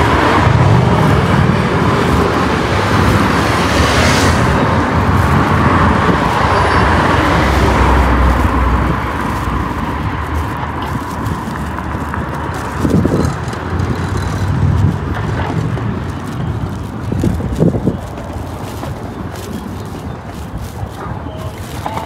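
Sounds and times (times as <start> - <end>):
cars passing: 0.0 - 22.0
motorcycles passing: 0.0 - 22.0.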